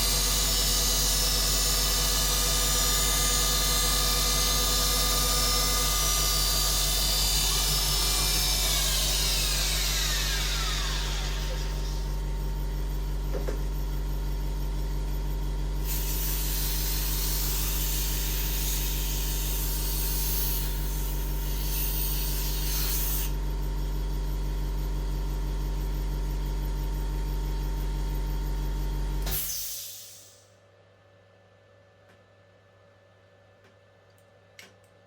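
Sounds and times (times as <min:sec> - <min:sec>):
cutter rasping through workpiece: 0:00.0 - 0:12.1, 0:21.5 - 0:23.3
milling machine motor hum: 0:00.0 - 0:19.3.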